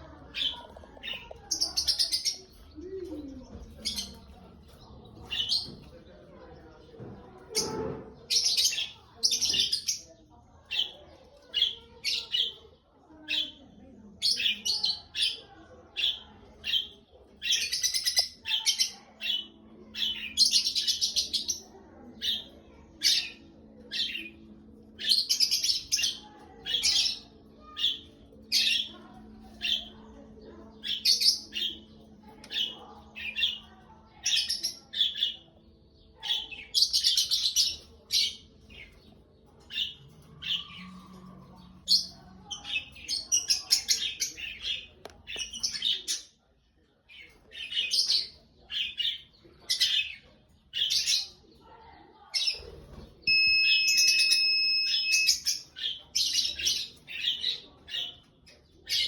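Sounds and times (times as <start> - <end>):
bird chirping: 53.2 - 57.3.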